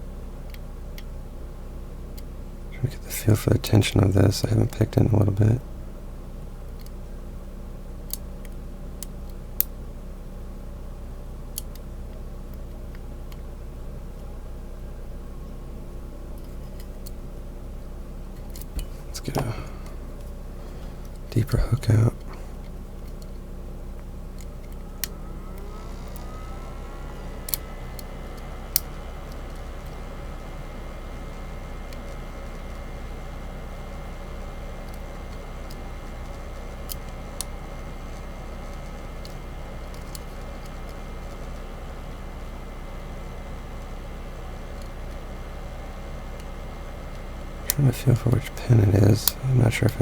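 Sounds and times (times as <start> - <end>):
low hum: 10.4 - 50.0.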